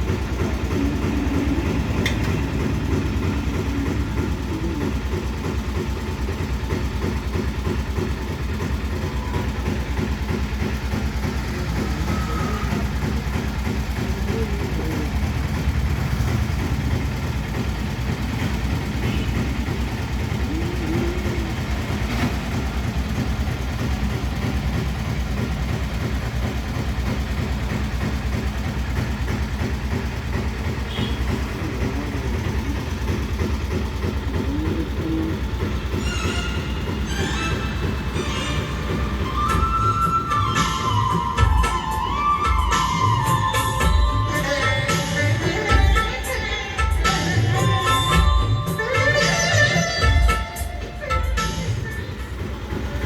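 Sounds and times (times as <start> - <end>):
heavy low rumble through speakers: 0.0 - 6.4, 19.5 - 23.7, 31.3 - 39.8.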